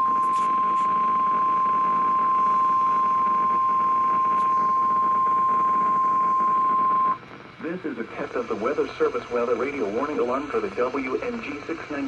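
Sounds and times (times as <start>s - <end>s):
steady high-pitched alarm tone: 0.0s - 7.2s
faint radio hiss: 0.0s - 12.0s.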